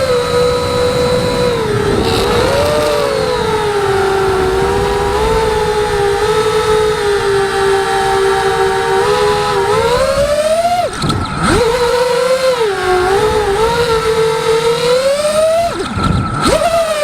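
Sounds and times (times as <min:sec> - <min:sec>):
quadcopter motors whining: 0:00.0 - 0:17.0.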